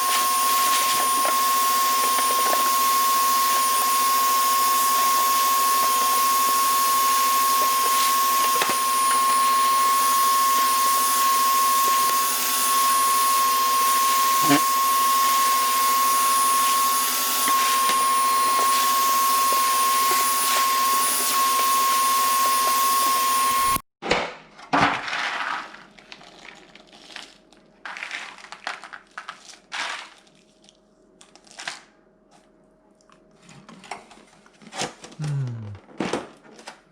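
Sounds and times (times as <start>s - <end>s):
vacuum cleaner whining: 0.0s - 23.8s.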